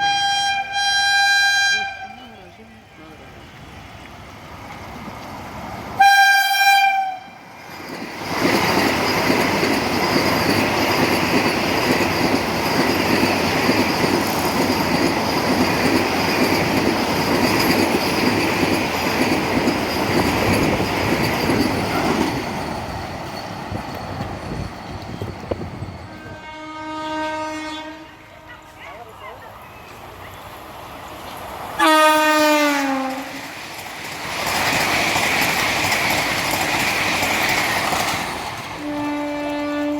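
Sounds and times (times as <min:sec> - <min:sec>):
train horn blast: 0:00.0 - 0:02.3, 0:06.0 - 0:07.4, 0:26.1 - 0:28.8, 0:31.8 - 0:33.4, 0:38.8 - 0:39.9
train passing at speed: 0:00.0 - 0:39.9.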